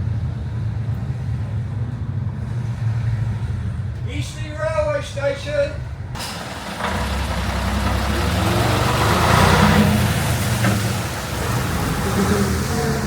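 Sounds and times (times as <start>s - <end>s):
vehicle engine hum: 5.8s - 13.0s
tyres hissing through water: 6.2s - 13.0s.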